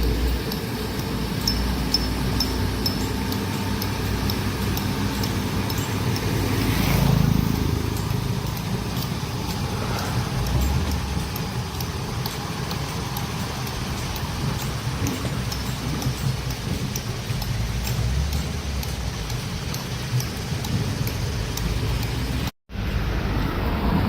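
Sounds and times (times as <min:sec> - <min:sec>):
heavy machine engine rumbling: 0:00.0 - 0:24.0.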